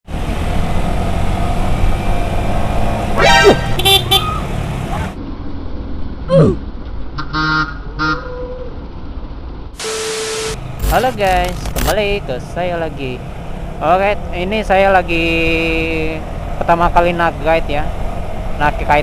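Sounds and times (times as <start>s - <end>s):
motorcycle engine riding: 0.1s - 7.1s, 9.8s - 18.9s
vehicle horn toots: 3.2s - 4.4s.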